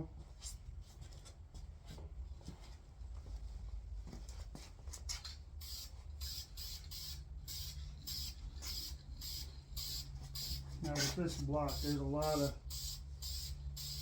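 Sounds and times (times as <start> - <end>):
spray hissing bursts: 5.6 - 14.0.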